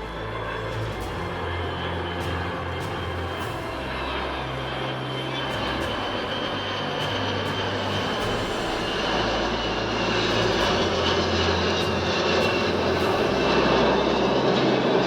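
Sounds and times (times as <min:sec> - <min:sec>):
high jet whine: 0:00.0 - 0:15.0
jet engines roaring: 0:00.0 - 0:15.0.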